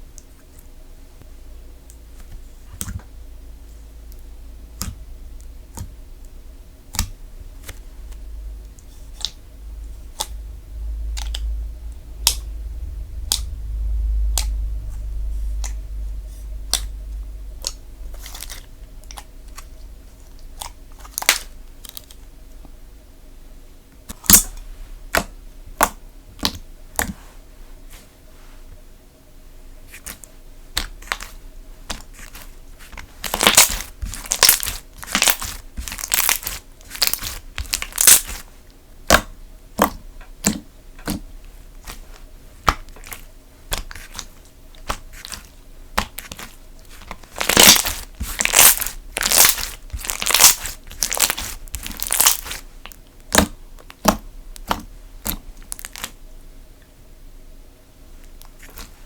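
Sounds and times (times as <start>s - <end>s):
slime squishing and crackling: 15.4s - 22.2s, 24.0s - 27.3s, 29.9s - 56.2s, 58.3s - 59.0s.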